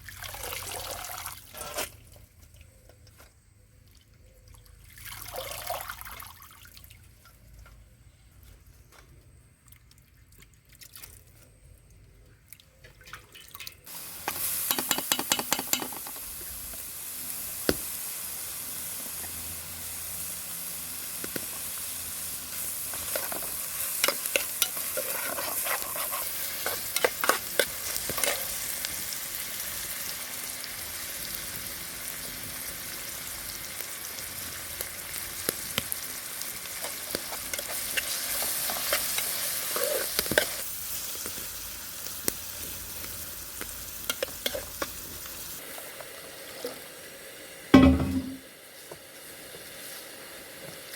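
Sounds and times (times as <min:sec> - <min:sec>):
food sizzling in hot oil: 0:13.8 - 0:50.9
utensil stirring and scraping pot: 0:22.9 - 0:28.6, 0:36.8 - 0:40.6, 0:44.1 - 0:44.8.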